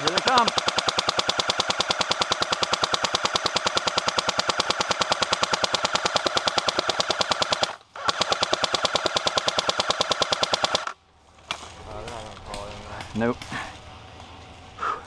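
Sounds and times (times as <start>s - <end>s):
electric airsoft gun firing full-auto: 0.0s - 11.0s.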